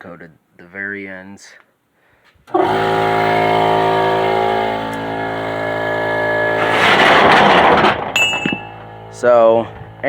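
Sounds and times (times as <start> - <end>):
motor running steadily: 2.5 - 10.0
loud noisy rush: 5.2 - 9.2.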